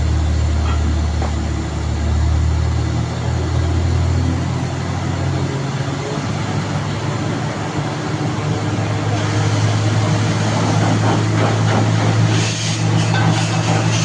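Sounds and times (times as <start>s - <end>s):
heavy engine humming: 0.0s - 14.0s
rattling hiss: 9.2s - 14.0s.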